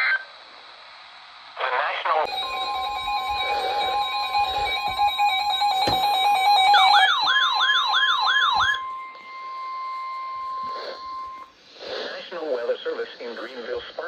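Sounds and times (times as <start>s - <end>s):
yelping siren wail: 2.3s - 11.5s
steady alarm tone: 2.3s - 11.6s.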